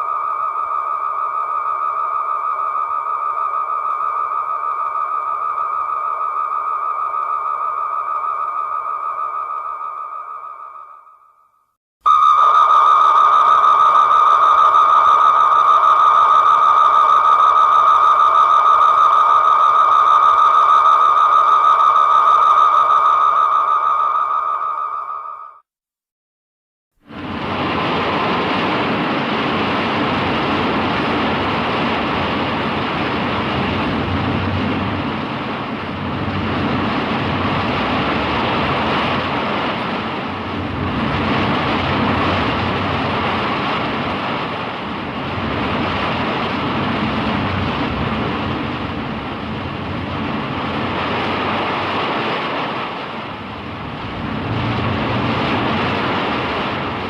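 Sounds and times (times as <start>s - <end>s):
wind-like rushing roar: 27.0s - 57.0s.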